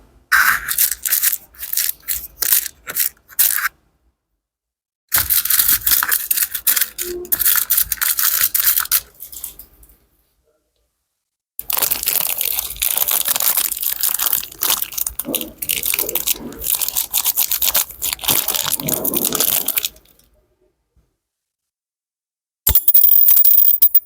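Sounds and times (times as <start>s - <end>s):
material being crushed and crumpled: 11.6s - 20.2s.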